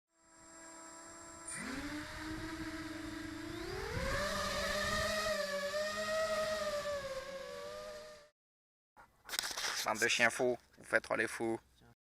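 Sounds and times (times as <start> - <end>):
quadcopter motors whining: 0.2 - 8.3.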